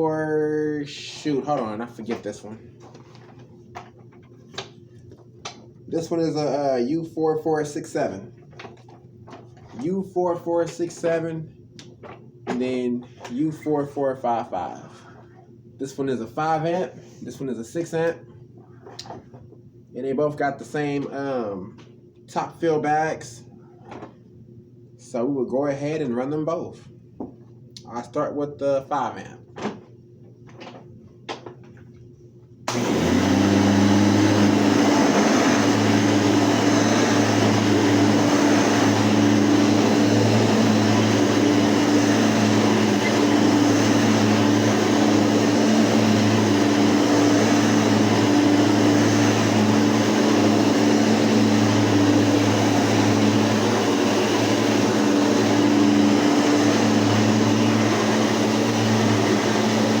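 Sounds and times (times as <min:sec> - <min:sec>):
vacuum cleaner running: 0:00.0 - 0:03.9, 0:05.9 - 0:08.3, 0:32.7 - 1:00.0.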